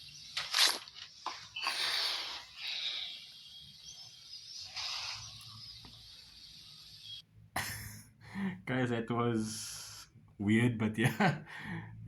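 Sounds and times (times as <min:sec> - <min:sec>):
faint high chirps: 0:01.4 - 0:07.2.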